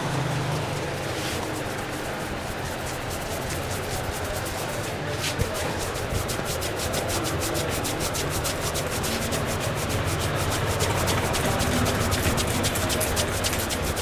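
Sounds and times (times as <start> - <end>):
hands rubbing hair: 0.1 - 14.0.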